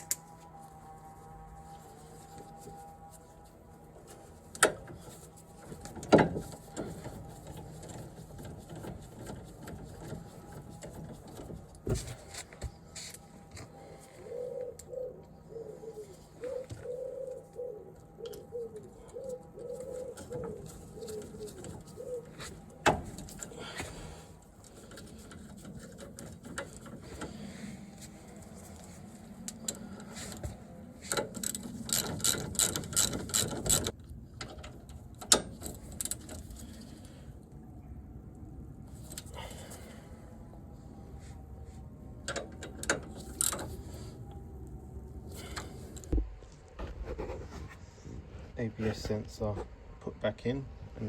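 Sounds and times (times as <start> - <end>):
bird cooing: 13.8 - 22.8.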